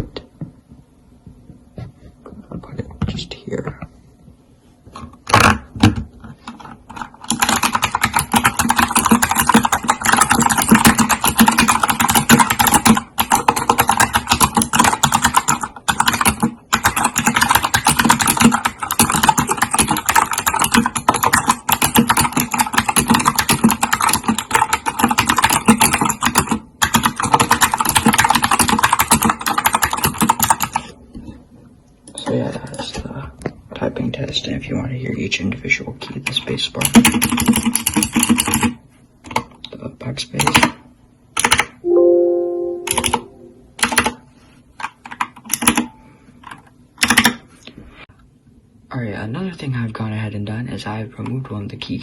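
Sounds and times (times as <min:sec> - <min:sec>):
mechanical keyboard typing: 0:06.4 - 0:30.9, 0:36.2 - 0:39.5, 0:40.4 - 0:40.8, 0:41.4 - 0:41.8, 0:42.7 - 0:44.2, 0:44.8 - 0:45.9, 0:47.0 - 0:47.4.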